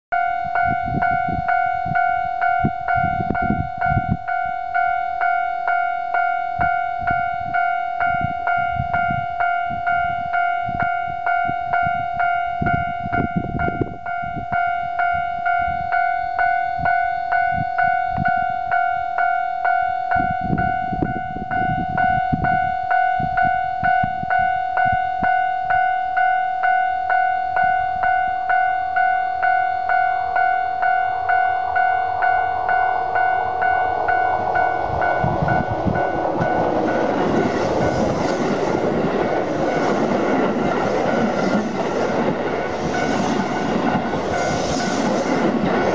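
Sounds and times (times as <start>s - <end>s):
level crossing bell ringing: 0.2s - 37.9s
approaching train rushing: 19.6s - 45.9s
low rumbles: 31.0s - 45.9s.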